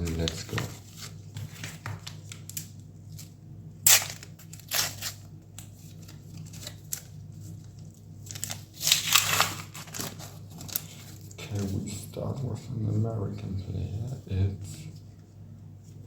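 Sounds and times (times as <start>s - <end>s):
wrappers crinkling: 0.0s - 5.3s, 5.9s - 11.7s.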